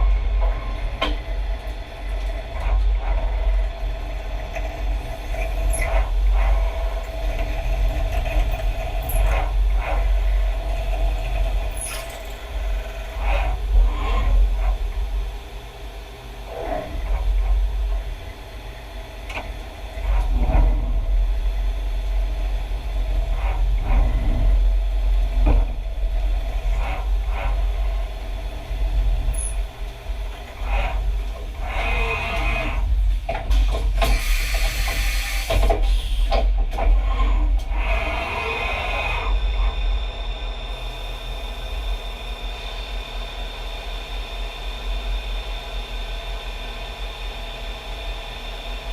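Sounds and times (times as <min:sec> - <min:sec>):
milling machine humming: 0:00.0 - 0:48.9
loud hiss: 0:34.0 - 0:36.4.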